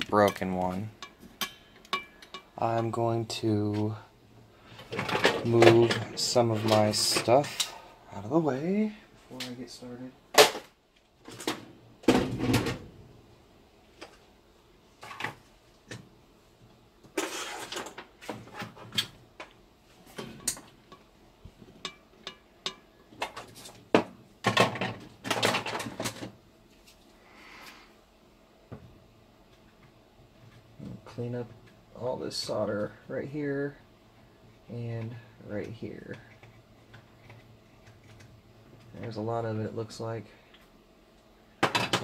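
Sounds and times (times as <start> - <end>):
tools knocking and scraping on workbench: 0.0 - 3.0, 20.1 - 26.3.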